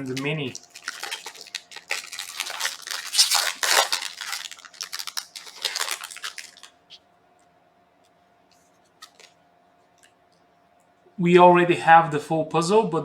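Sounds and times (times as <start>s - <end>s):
foil wrapper crinkling: 0.0s - 7.0s, 8.9s - 9.4s.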